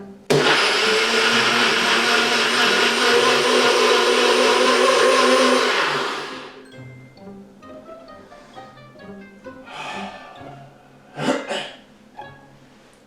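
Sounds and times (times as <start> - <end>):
blender running with high whine: 0.3 - 6.6.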